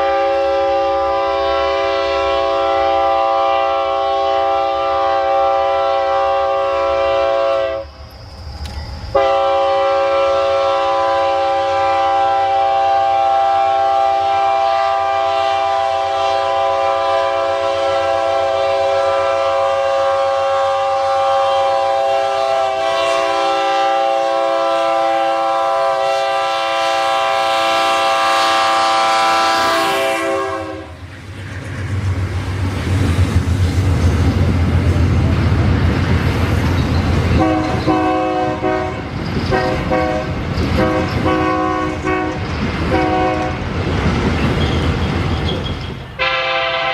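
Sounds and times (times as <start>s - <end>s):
locomotive air horn: 0.0s - 7.9s, 9.2s - 31.0s, 37.4s - 43.6s, 46.2s - 46.9s
low rumble of train: 0.0s - 46.9s.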